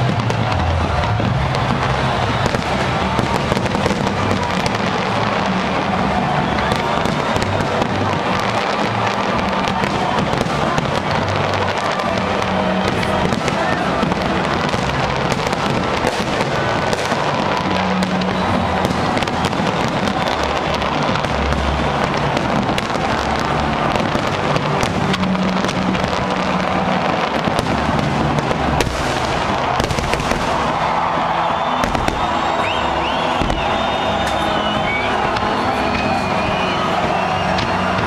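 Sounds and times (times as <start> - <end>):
fireworks bangs and crackles: 0.0 - 38.0.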